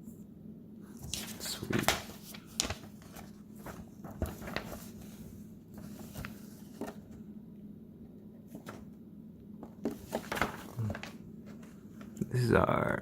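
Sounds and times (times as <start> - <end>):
low steady hum: 0.0 - 13.0
paper rustles and taps: 1.0 - 5.2, 5.8 - 7.2, 8.5 - 8.9, 9.6 - 12.2
paper pages turning: 1.0 - 7.2, 9.8 - 12.2.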